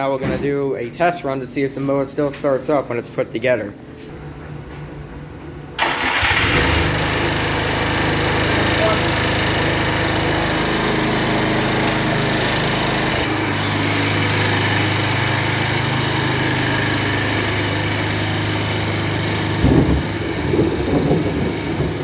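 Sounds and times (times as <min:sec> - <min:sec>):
riding mower engine running: 0:05.8 - 0:22.0.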